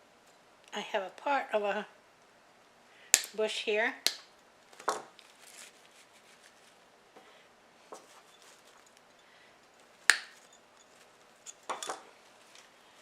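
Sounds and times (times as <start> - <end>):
artificial plant rustling: 4.5 - 13.0.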